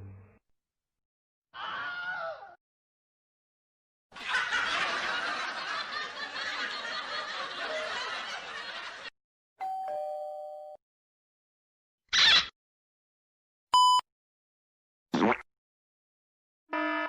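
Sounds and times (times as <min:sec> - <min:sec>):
group of people laughing: 0:04.1 - 0:09.1.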